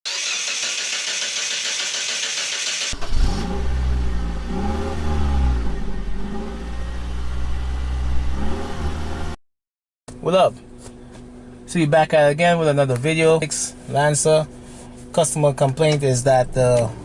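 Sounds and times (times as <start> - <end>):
car engine revving: 2.7 - 9.4.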